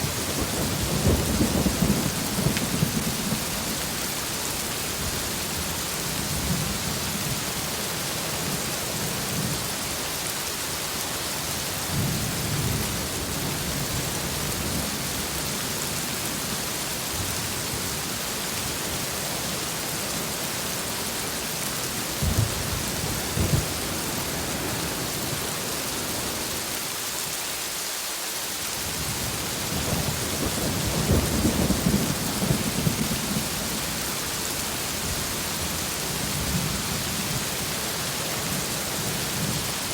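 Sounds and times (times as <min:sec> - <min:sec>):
thunder rumbling: 0:00.0 - 0:04.0, 0:22.2 - 0:25.5, 0:29.1 - 0:34.0
heavy rain: 0:00.0 - 0:39.9.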